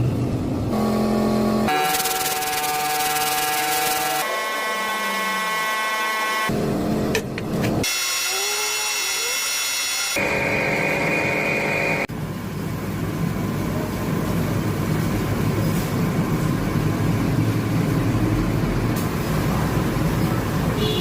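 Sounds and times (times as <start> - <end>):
machine high whine: 0.7 - 6.8, 7.8 - 12.1
rumbling mechanical noise: 6.5 - 20.8.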